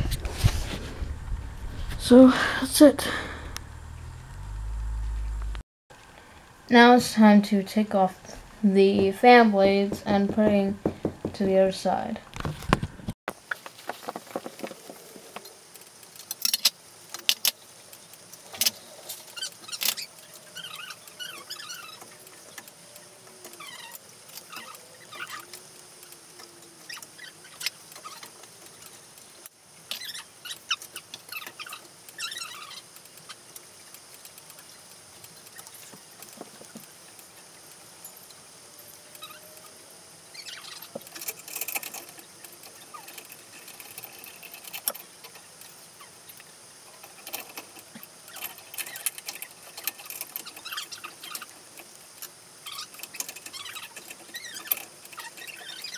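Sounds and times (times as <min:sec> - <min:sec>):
clicks squeaks and scraping: 0:08.2 - 0:12.8, 0:18.5 - 0:25.8, 0:26.4 - 0:34.7, 0:38.9 - 0:55.9.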